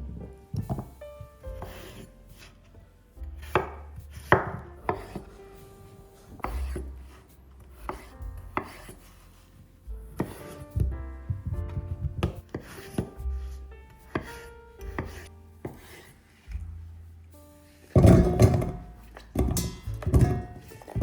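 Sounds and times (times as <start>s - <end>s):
knife chopping on cutting board: 3.4s - 5.2s, 6.4s - 6.9s, 7.9s - 9.0s, 14.1s - 14.4s.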